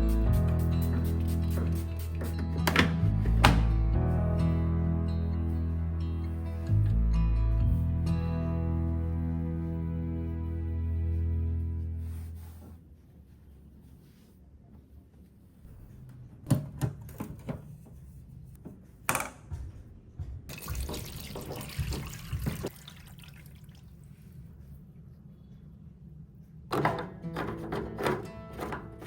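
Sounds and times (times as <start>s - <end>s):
water running from a tap: 20.5s - 24.0s.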